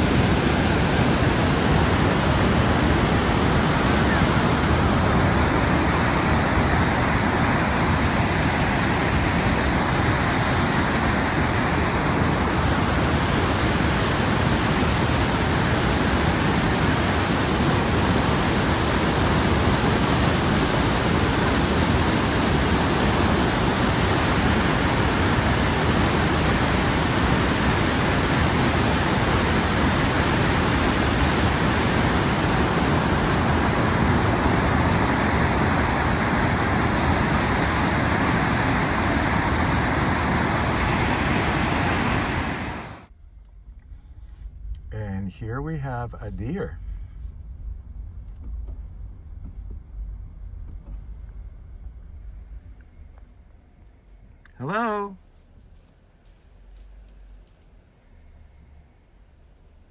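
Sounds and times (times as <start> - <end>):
waterfall rushing: 0.0 - 43.1.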